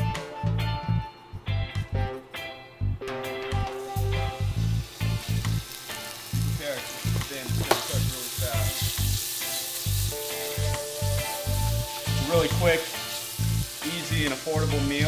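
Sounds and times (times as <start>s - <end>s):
background music with low beat: 0.0s - 15.0s
steak sizzling in a wok: 3.7s - 15.0s.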